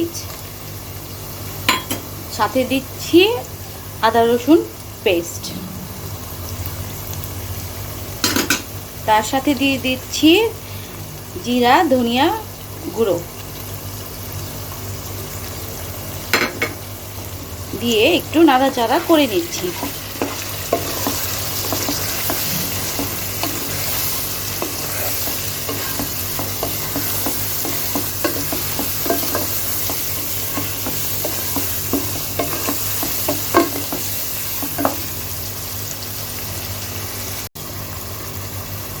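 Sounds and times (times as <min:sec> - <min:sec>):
vegetables sizzling in hot oil: 0:00.0 - 0:39.0
spatula scraping a pan: 0:18.6 - 0:35.0.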